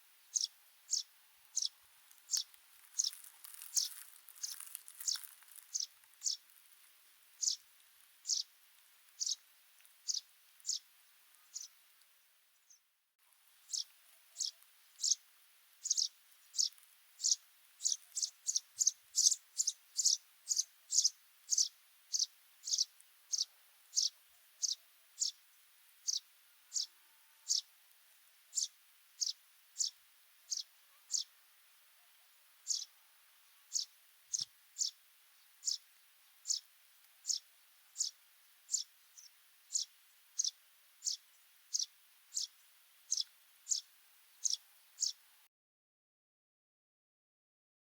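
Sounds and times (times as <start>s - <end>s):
sparrow chirping: 0.2s - 6.5s, 7.4s - 8.5s, 9.2s - 9.4s, 10.0s - 11.8s, 13.6s - 15.2s, 15.8s - 27.7s, 28.5s - 31.4s, 32.6s - 45.2s.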